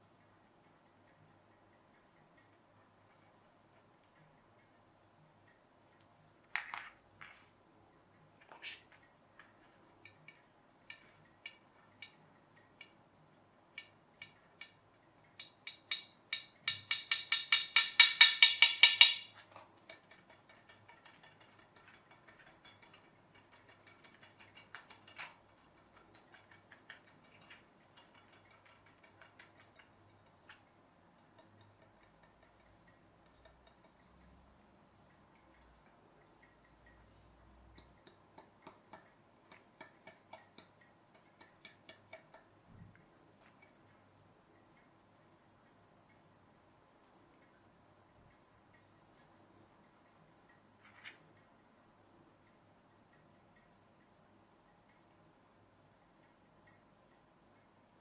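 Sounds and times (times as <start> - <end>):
fast run of clicks: 19.7 - 34.0.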